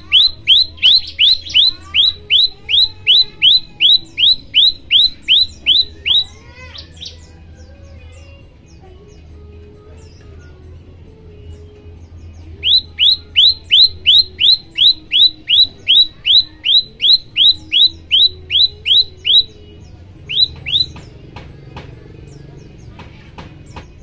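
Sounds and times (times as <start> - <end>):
bird singing sharp notes: 0.0 - 7.3, 12.4 - 21.2.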